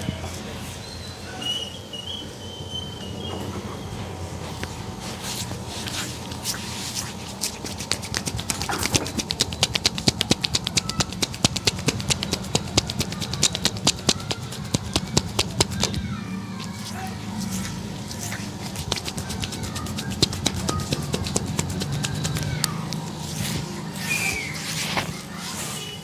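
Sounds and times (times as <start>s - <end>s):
steady background noise: 0.0s - 26.0s
hands slapping a head: 5.8s - 16.0s, 18.1s - 25.2s.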